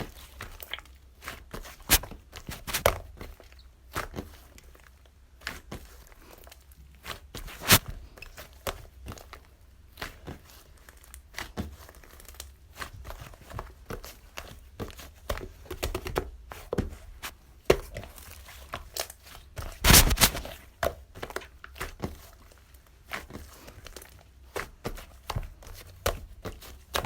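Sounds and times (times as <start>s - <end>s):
loud rustling: 19.8s - 20.5s.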